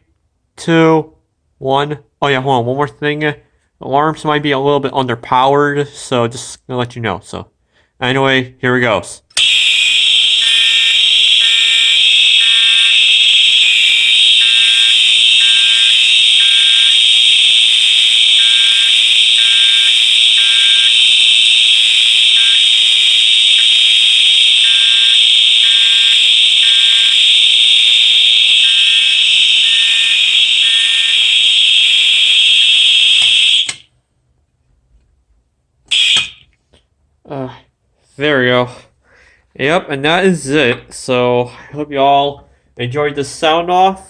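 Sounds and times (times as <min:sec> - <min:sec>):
fire alarm horn beeping: 0:09.4 - 0:33.9, 0:35.9 - 0:36.5
fire alarm horn steady tone: 0:09.4 - 0:33.9, 0:35.9 - 0:36.5.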